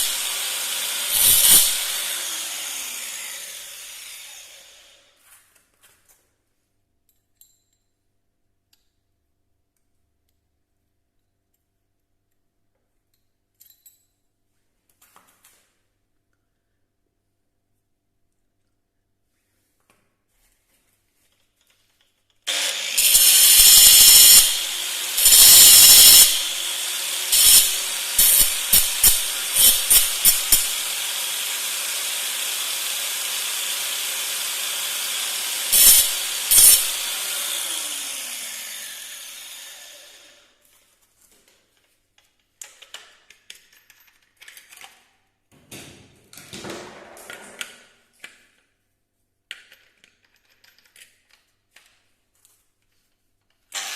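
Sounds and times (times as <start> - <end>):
electric power tool running: 0.0 - 5.1, 22.5 - 40.4.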